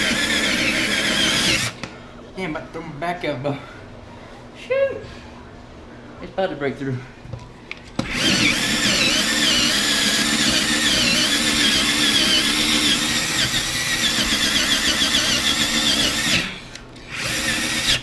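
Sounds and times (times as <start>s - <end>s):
power drill with hole saw squealing: 0.0s - 1.8s, 8.1s - 16.5s, 17.1s - 18.0s.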